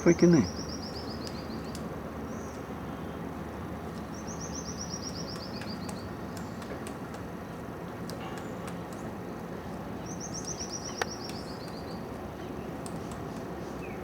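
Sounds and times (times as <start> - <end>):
forest background hiss: 0.0 - 14.0
sharp ticks: 9.7 - 12.0.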